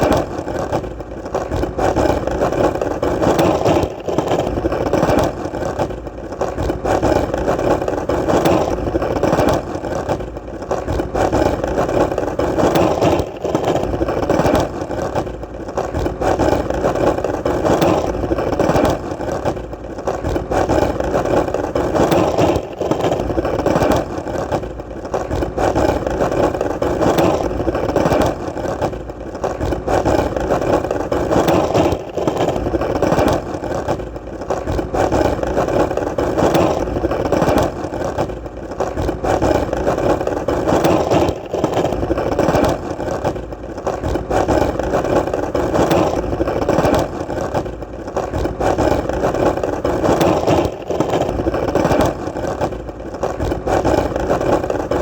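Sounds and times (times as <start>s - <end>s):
skateboard wheels rolling: 0.0s - 55.0s.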